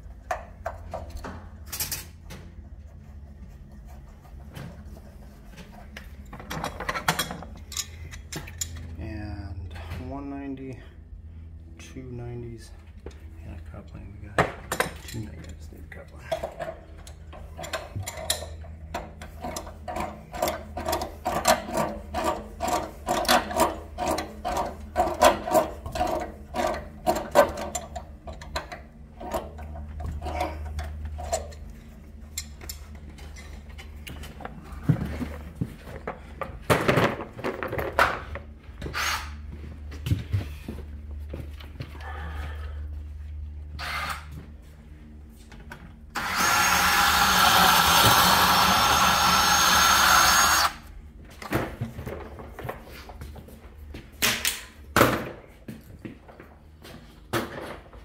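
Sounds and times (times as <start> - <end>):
knocks and scrapes on pipework: 0.3 - 8.9, 14.5 - 36.6.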